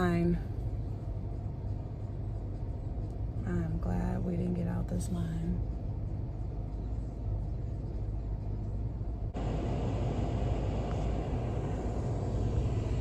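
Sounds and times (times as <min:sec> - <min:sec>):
car idling from inside: 0:05.7 - 0:13.0.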